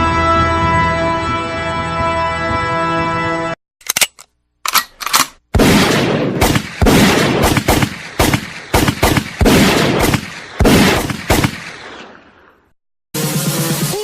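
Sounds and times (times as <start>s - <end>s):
gunshots with booming tail: 5.5s - 12.7s.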